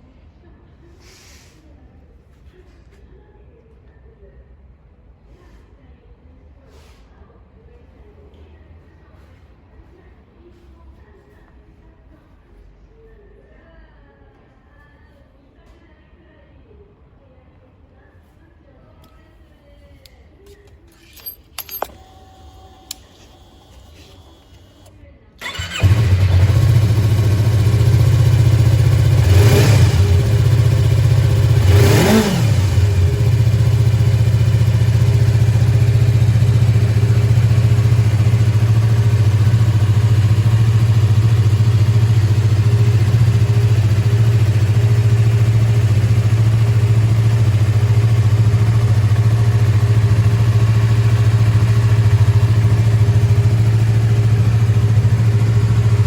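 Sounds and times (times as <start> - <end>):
motorcycle engine starting and idling: 21.0 - 56.0
motorcycle engine revving: 25.4 - 56.0.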